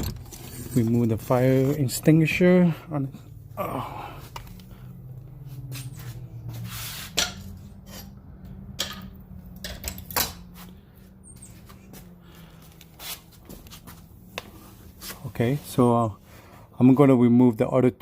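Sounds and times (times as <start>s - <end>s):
metal tools clinking and knocking: 7.2s - 10.4s.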